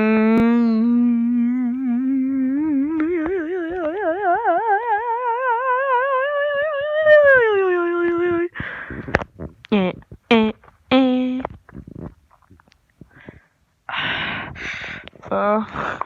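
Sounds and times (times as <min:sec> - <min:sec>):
humming tone with vibrato: 0:00.0 - 0:08.6.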